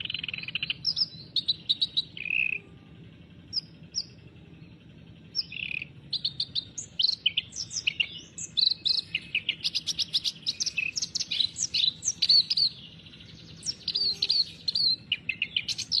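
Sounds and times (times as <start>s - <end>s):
reed warbler singing: 0.0s - 16.0s.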